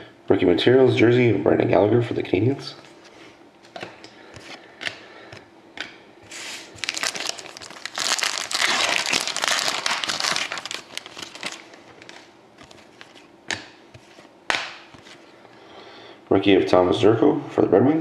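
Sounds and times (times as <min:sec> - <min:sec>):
packaging crinkling: 0:06.4 - 0:15.3.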